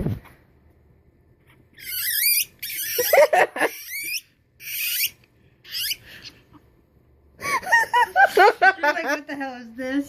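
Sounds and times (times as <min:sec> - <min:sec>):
guinea pigs squeaking: 0:01.8 - 0:06.3.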